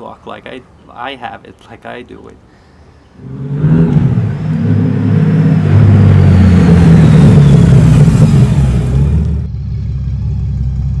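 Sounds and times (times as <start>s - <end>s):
vehicle engine running: 3.2s - 11.0s.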